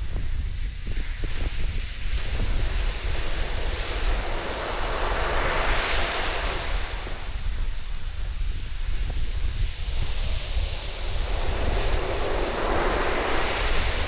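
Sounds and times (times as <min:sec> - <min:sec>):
wind buffeting microphone: 0:00.0 - 0:14.0
wave breaking on sand: 0:09.6 - 0:14.0.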